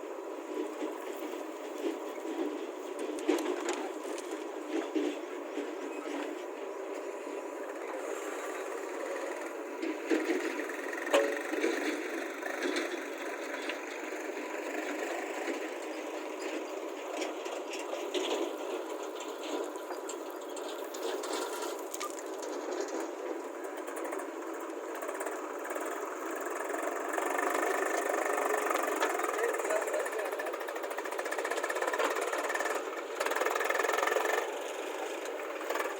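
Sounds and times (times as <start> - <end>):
backhoe diesel engine running: 0.0 - 35.9.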